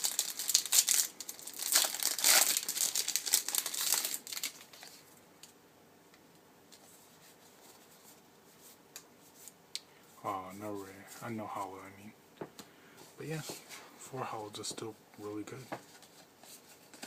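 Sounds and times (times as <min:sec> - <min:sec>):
foil wrapper crinkling and tearing: 0:00.0 - 0:05.0.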